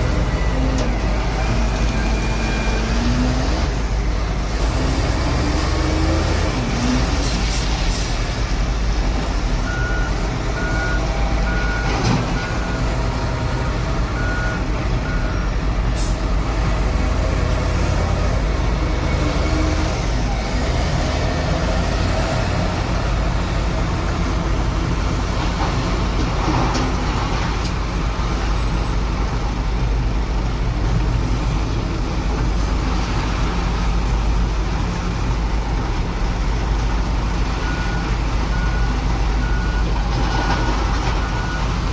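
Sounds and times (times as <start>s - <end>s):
diesel engine running: 0.0s - 41.9s
reversing alarm beeping: 9.7s - 13.1s, 14.1s - 15.6s, 37.6s - 41.8s.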